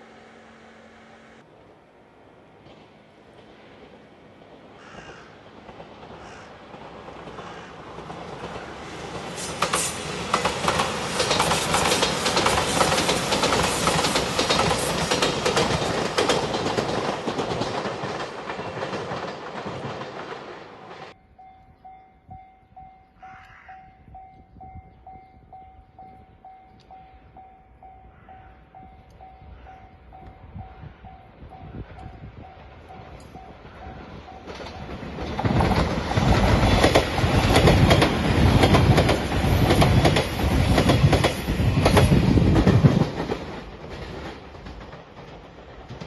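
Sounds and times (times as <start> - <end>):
train wheels clicking over rail joints: 2.4 - 21.2, 31.9 - 46.0
level crossing warning bell: 21.1 - 35.2.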